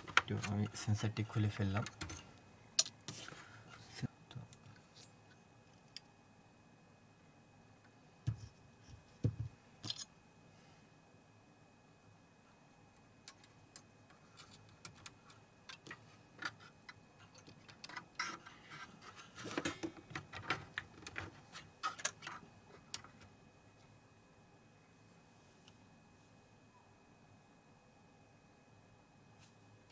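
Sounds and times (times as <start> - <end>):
small parts and tools clicking: 0.0 - 3.2, 9.8 - 10.1, 13.2 - 23.3.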